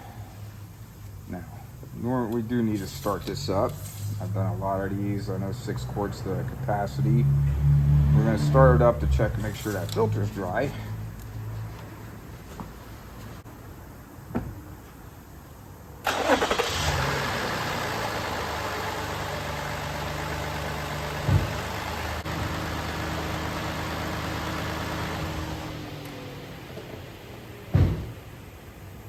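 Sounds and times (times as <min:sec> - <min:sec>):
car engine starting and idling: 0:01.8 - 0:11.7, 0:16.0 - 0:29.0
thump: 0:14.3 - 0:14.6, 0:21.2 - 0:21.7, 0:27.7 - 0:28.2.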